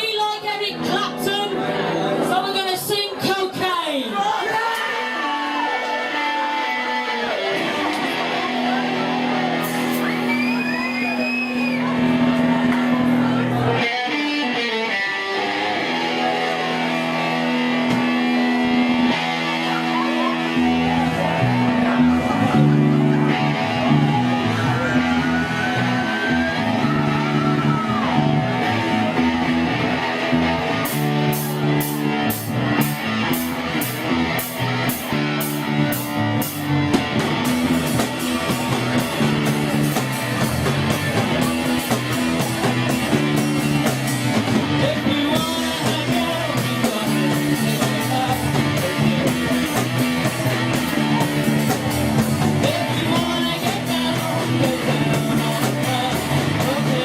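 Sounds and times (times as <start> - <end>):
electric guitar: 0.0 - 2.4, 4.5 - 57.0
bass guitar: 0.0 - 3.8, 4.5 - 57.0
drum kit: 5.6 - 57.0
person singing: 44.4 - 57.0.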